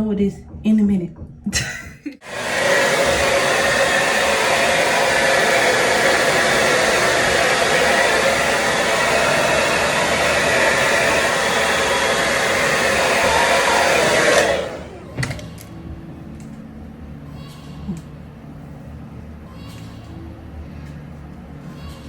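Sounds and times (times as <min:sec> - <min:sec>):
hair dryer blowing: 0:02.2 - 0:15.4.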